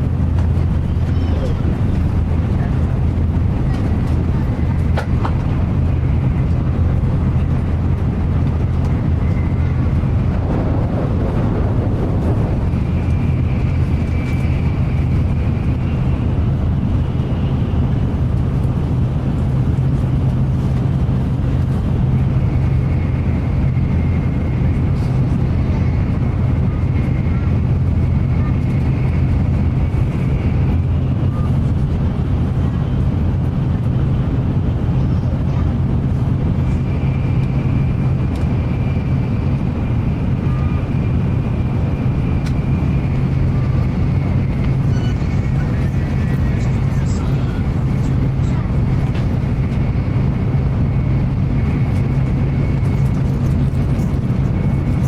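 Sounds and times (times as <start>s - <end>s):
low train rumble: 0.0s - 55.0s
rushing noise: 1.6s - 19.7s.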